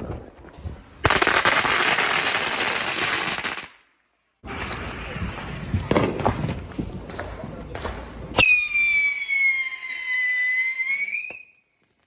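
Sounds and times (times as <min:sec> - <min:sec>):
firework bangs: 0:04.4 - 0:11.4
fireworks crackling pops: 0:04.4 - 0:11.6.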